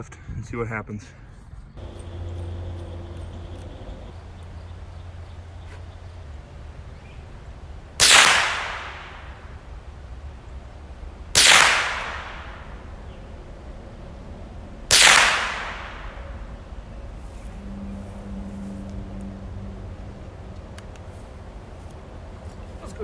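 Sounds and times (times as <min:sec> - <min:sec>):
rifle shots: 0:08.0 - 0:09.6, 0:11.3 - 0:12.9, 0:14.9 - 0:16.5.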